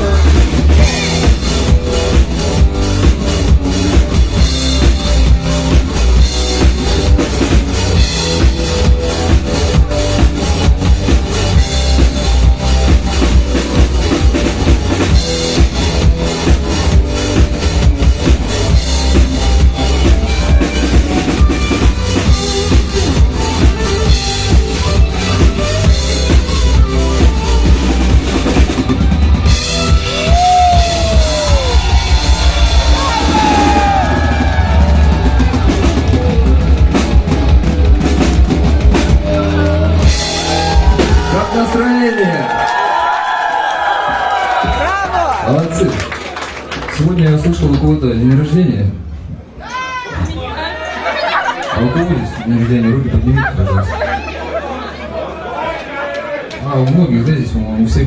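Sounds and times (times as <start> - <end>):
drum kit and bass beat: 0.0 - 43.0, 43.8 - 45.3
rock band playing: 0.0 - 55.1.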